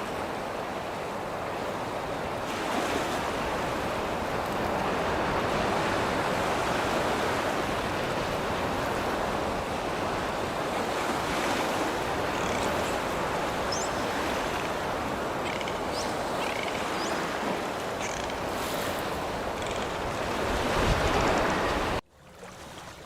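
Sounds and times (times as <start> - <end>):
surf washing onto beach: 20.1 - 22.0.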